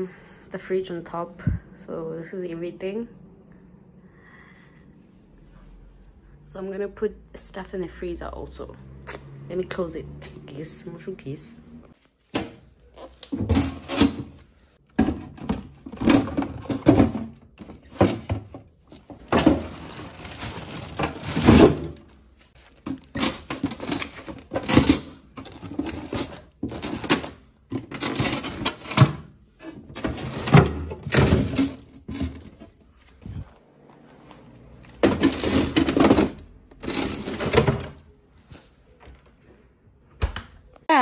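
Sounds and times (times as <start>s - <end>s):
plastic bags rustling: 12.0s - 29.0s, 29.8s - 38.7s
packages knocking and clicking: 12.2s - 32.8s, 34.9s - 38.0s.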